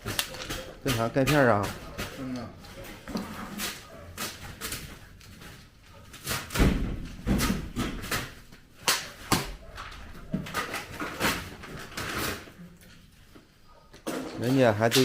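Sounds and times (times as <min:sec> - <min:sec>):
knocks and bangs: 0:06.5 - 0:08.1.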